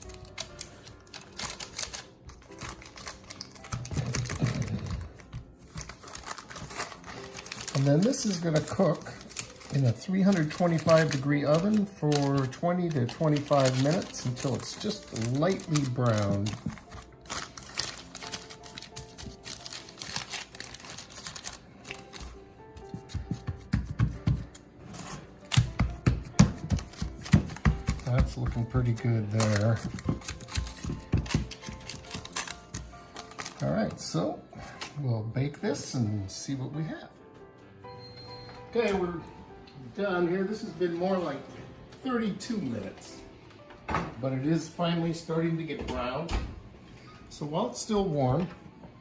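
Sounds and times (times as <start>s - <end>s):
baking pan and paper handling: 0.0s - 22.3s, 26.6s - 33.6s
background music with held notes: 0.0s - 49.0s.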